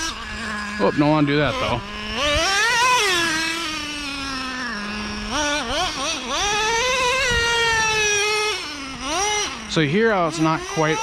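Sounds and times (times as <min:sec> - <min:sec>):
small nitro engine revving: 0:00.0 - 0:11.0.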